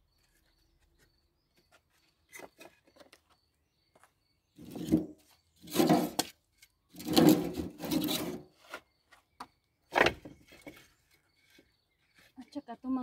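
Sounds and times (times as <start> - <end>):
firewood logs scraping together: 4.6 - 8.9, 9.9 - 12.6.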